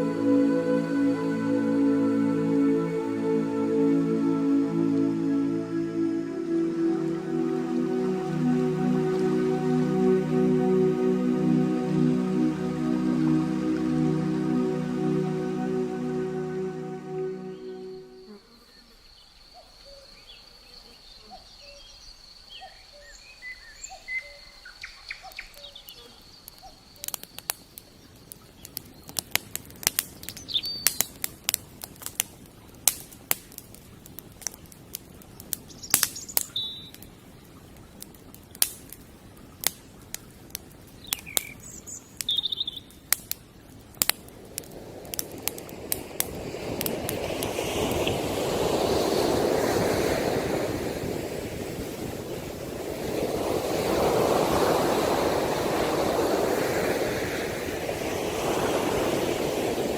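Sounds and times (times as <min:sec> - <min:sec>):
steady high thin tone: 0:00.0 - 0:18.4
small birds chirping: 0:35.1 - 0:37.1, 0:40.9 - 0:43.1.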